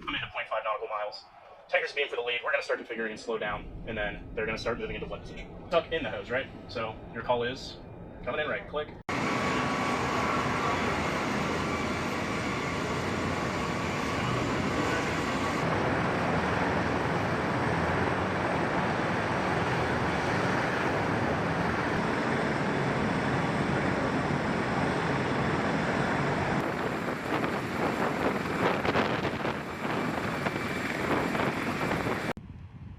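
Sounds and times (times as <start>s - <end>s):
military aircraft in flight: 2.5s - 32.9s
wind buffeting microphone: 12.4s - 32.9s.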